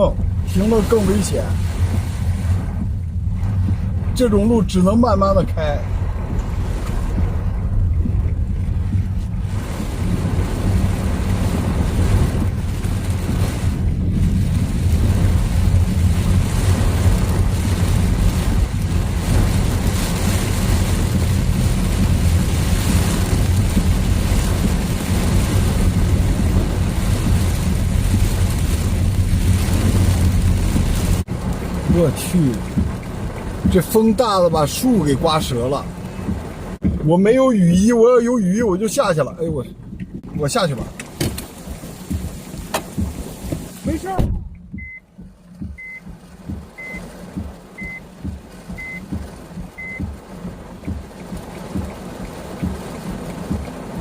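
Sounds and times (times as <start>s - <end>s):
low road and engine rumble: 0.0s - 54.0s
rain and wind over car: 0.0s - 54.0s
car warning chime beeping: 44.5s - 51.0s.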